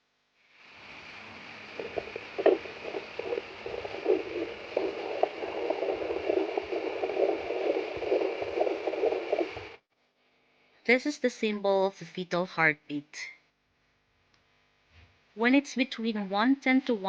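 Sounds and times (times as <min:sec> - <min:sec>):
doppler hiss: 0:00.4 - 0:09.8
fetal heartbeat whooshes: 0:01.8 - 0:09.8.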